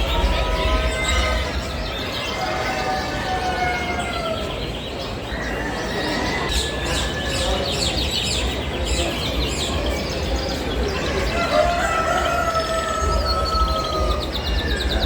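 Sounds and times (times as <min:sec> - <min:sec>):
rooster crowing: 0:11.3 - 0:14.8.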